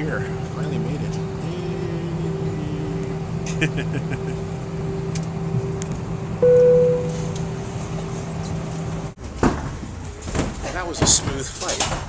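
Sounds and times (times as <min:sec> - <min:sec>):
aircraft cabin hum: 0:00.2 - 0:12.0
electronic chime: 0:06.4 - 0:07.3.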